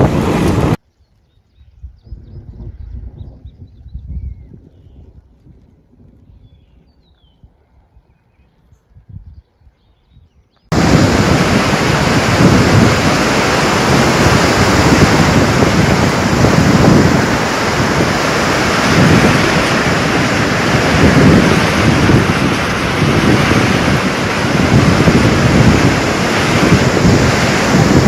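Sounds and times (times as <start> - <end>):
steady storm roar: 0.0 - 0.8, 10.7 - 28.0
wind buffeting microphone: 0.0 - 28.0.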